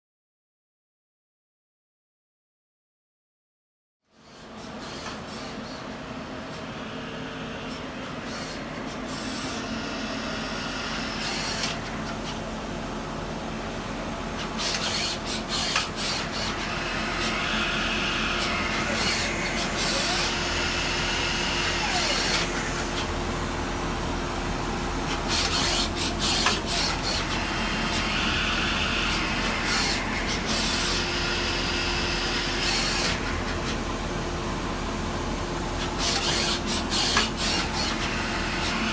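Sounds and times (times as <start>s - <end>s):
lathe motor hum: 9.6s - 38.9s
hissing and rasping machining: 14.6s - 23.0s.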